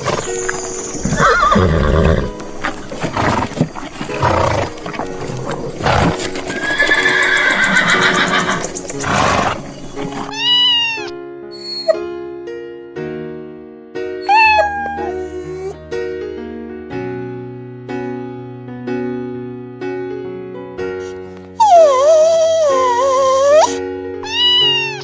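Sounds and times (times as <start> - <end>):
background music: 0.0 - 12.0
horse neighing: 0.0 - 12.0, 14.3 - 15.8, 21.6 - 25.0.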